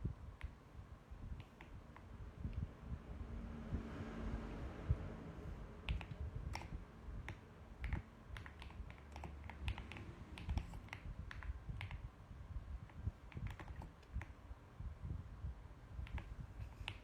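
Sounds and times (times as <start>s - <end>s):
mechanical keyboard typing: 5.8s - 12.0s, 13.3s - 14.3s.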